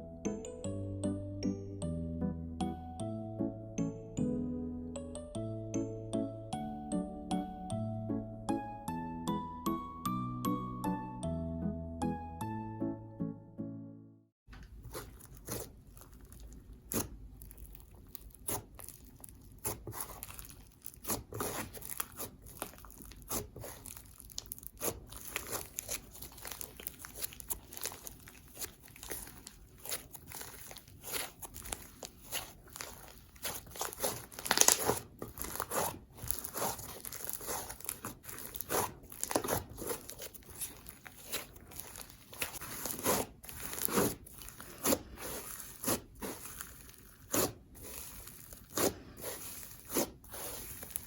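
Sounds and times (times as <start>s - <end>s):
slime crackling and popping: 14.7s - 51.0s.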